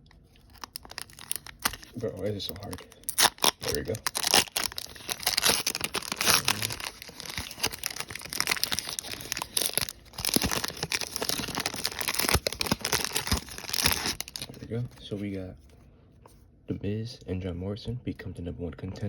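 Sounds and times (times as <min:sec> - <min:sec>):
wrapper crinkling: 0:00.3 - 0:15.0.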